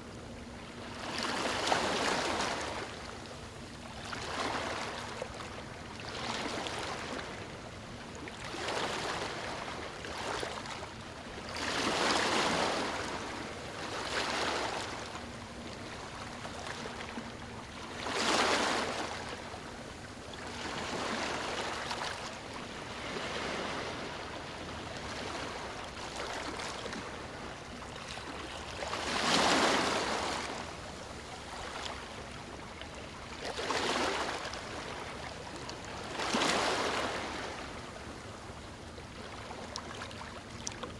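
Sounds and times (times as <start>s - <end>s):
ocean waves breaking on beach: 22.6s - 27.4s, 29.0s - 30.9s.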